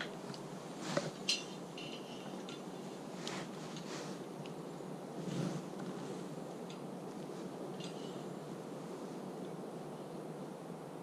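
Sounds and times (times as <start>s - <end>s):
low steady hum: 0.0s - 11.0s
soft scrapes and rustles: 0.2s - 6.5s, 7.1s - 9.3s.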